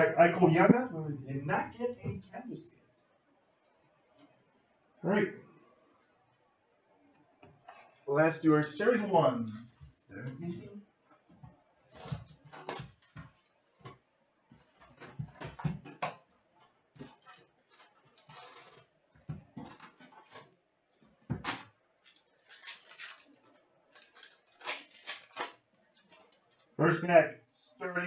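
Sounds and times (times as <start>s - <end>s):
wrappers crinkling: 11.8s - 13.6s, 17.0s - 26.8s.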